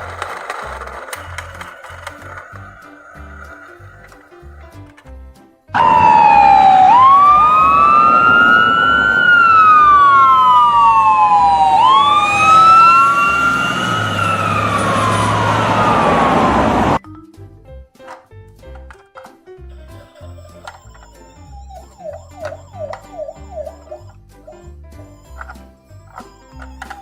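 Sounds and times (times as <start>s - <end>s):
ambulance sirens wailing: 0.3s - 4.2s, 5.8s - 17.0s, 20.1s - 24.2s, 25.2s - 27.0s.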